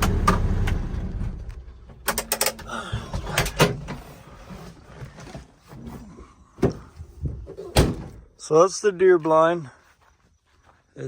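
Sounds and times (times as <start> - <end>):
sharp knocks and clicks: 1.8 - 2.7.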